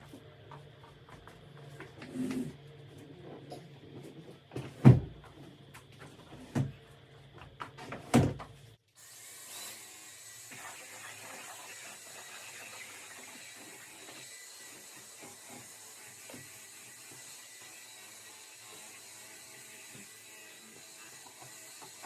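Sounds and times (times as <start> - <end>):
vacuum cleaner running: 0.0 - 8.3.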